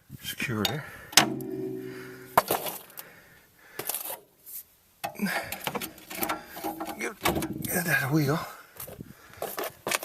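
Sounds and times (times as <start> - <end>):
metal bar knocking on metal: 1.2 - 2.5.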